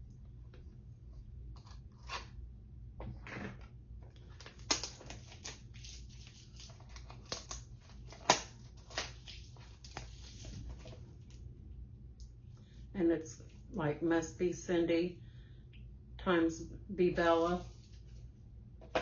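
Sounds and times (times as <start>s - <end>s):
packaging crinkling and tearing: 4.2s - 10.3s.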